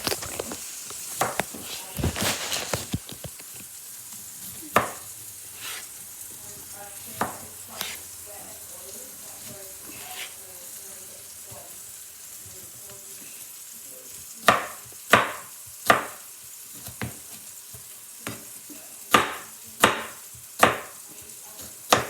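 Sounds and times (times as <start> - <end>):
knife chopping potatoes: 0.0 - 6.0, 7.0 - 8.2, 9.4 - 10.4, 14.3 - 22.0
low frying sizzle: 0.0 - 22.0.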